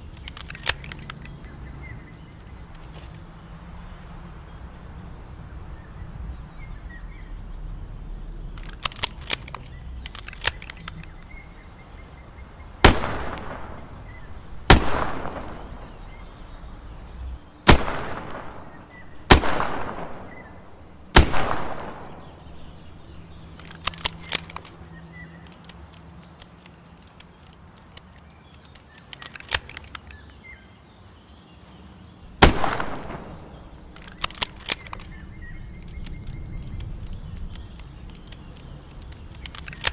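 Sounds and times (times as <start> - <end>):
quiet clicks: 0.0 - 3.4, 8.5 - 30.4, 32.4 - 39.9
revolver shots echoing: 12.8 - 16.6, 17.6 - 23.1, 32.4 - 34.0.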